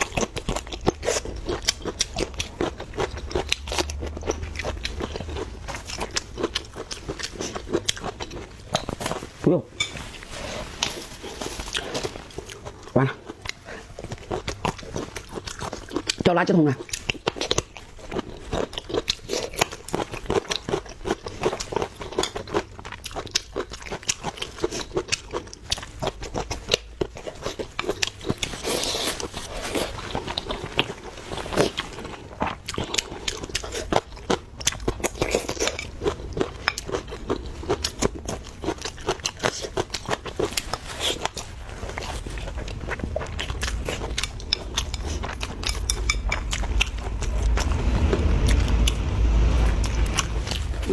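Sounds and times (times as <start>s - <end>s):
low rumble: 0.0s - 8.6s, 33.0s - 40.0s, 41.5s - 50.9s
chewing and biting: 0.0s - 9.4s, 10.8s - 50.9s.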